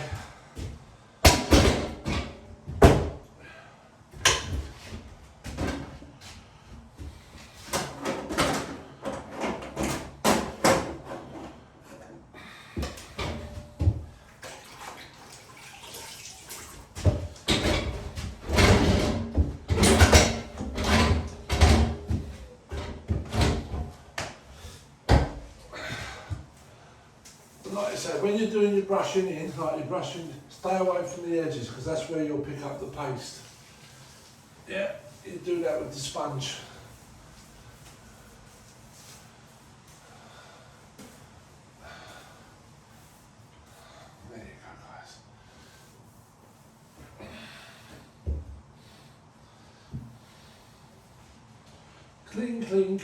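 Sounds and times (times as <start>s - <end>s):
wallpaper rustling: 32.6s - 40.1s.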